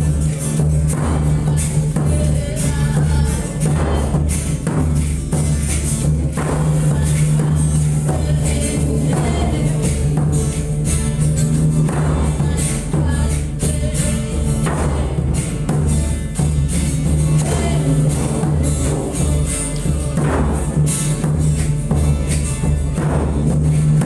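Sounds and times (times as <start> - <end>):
didgeridoo drone: 0.0 - 24.0
driving percussion beat: 0.0 - 24.0.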